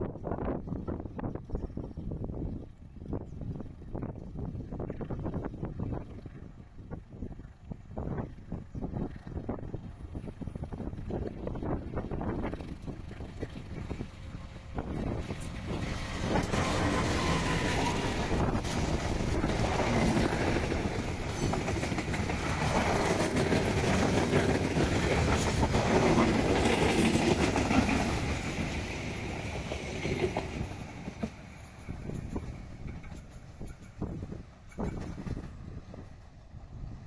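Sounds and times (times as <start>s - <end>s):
train wheels clattering over rails: 11.1s - 36.1s.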